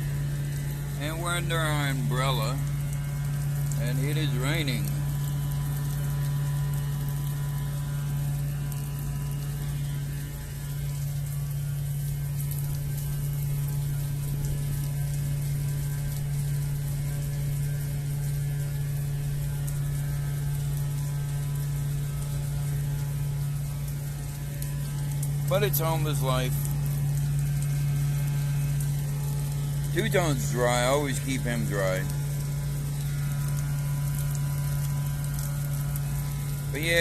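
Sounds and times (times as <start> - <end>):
rain on an umbrella: 0.0 - 37.0
steady low hum: 0.0 - 37.0.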